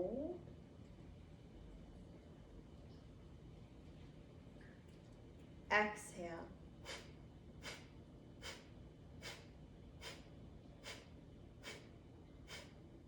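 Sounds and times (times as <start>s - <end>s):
short breaths through the nose: 6.9s - 11.9s, 12.5s - 12.8s.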